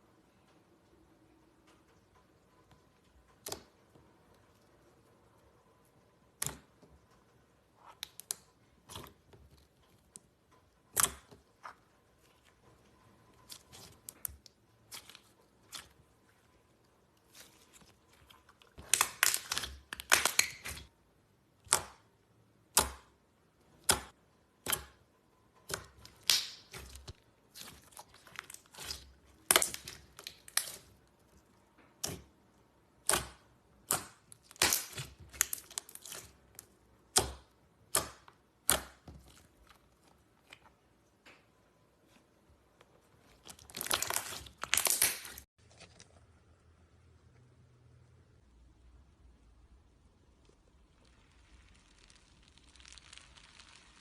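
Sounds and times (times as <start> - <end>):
slime popping and crackling: 12.2 - 20.9, 25.6 - 31.4, 33.0 - 40.6, 43.2 - 45.5, 50.1 - 54.0.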